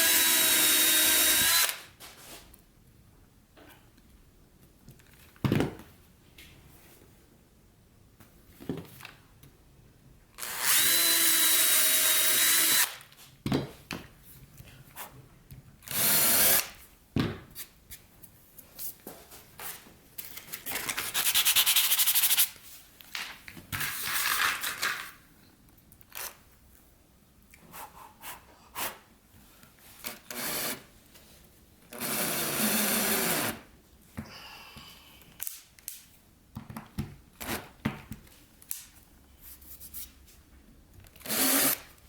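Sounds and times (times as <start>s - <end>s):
power tool cutting plywood: 0.0s - 1.8s.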